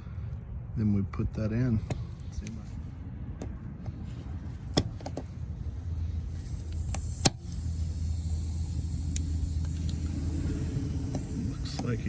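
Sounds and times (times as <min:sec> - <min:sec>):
steady low hum: 0:00.0 - 0:12.0
faint hiss: 0:06.0 - 0:12.0.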